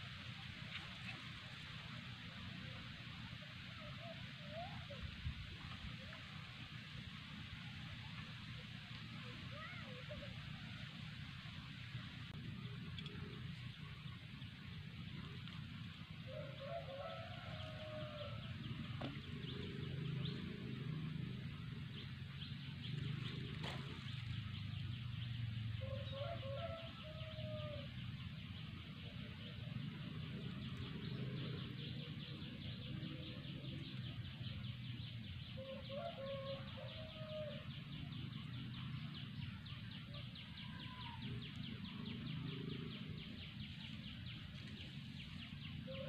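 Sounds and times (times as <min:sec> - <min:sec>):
rooster crowing: 0:16.3 - 0:18.5, 0:25.8 - 0:27.9, 0:35.6 - 0:37.6.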